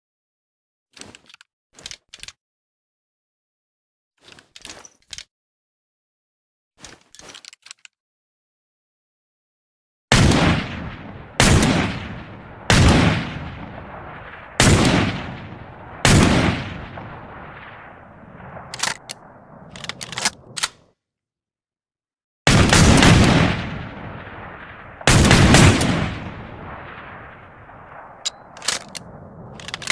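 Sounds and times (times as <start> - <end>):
revolver action clicks: 18.8 - 20.8.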